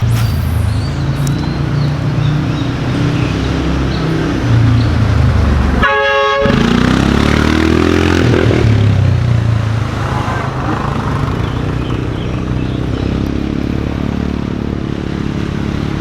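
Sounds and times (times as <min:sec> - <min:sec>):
vehicle engine droning: 0:00.0 - 0:16.0
car horn blast: 0:05.8 - 0:06.8.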